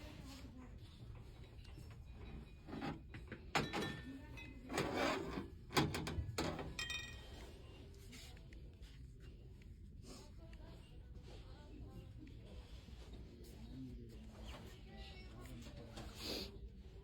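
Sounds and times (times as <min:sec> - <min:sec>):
sharp knocks and clinks: 0:02.3 - 0:04.6.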